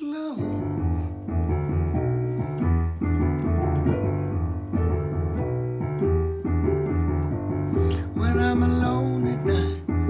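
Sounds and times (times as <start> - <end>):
piano chords and bass notes: 0.4 - 10.0.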